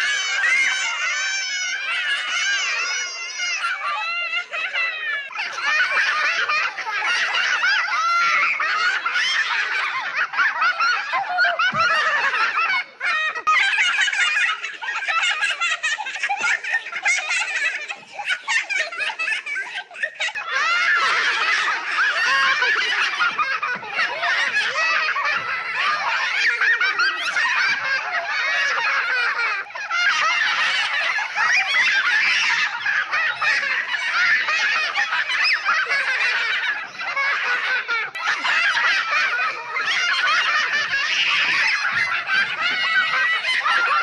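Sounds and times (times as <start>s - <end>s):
children laughing and giggling: 0.0s - 44.0s.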